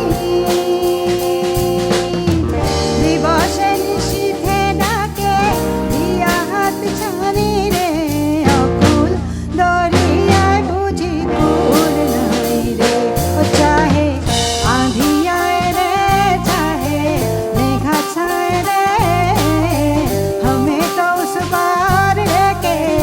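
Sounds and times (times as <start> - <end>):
drum kit beat: 0.0 - 23.0
folk-rock band playing: 0.0 - 23.0.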